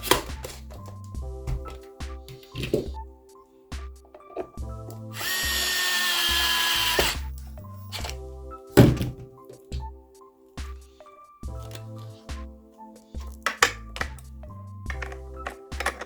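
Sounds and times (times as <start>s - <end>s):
background music with steady beat: 0.0s - 16.0s
cordless drill running: 5.2s - 7.2s.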